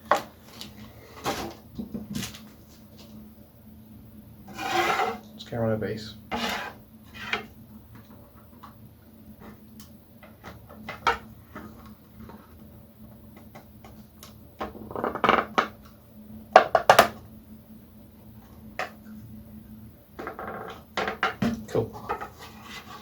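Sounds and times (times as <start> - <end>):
faint steady hum: 0.0 - 23.0
plastic scraping: 6.3 - 7.5.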